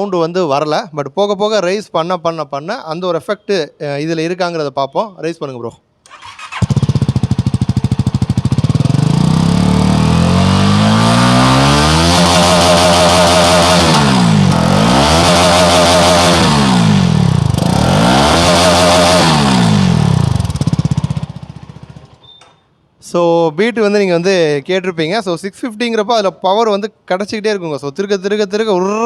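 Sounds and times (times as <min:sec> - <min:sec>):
motorcycle engine revving: 0:06.1 - 0:22.2.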